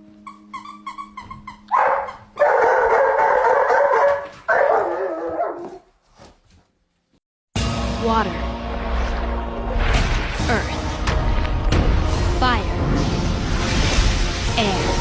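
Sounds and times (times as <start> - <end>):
dog yelping: 0.3 - 5.9
dog howling: 1.7 - 5.9.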